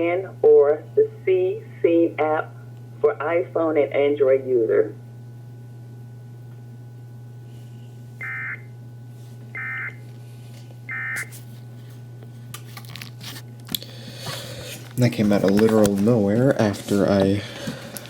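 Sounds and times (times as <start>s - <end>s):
steady low hum: 0.0s - 18.0s
clicks and rustles: 14.8s - 17.3s.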